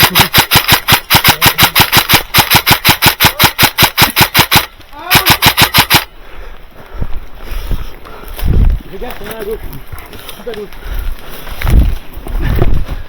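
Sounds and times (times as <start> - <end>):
airsoft rifle automatic fire: 0.0 - 6.1.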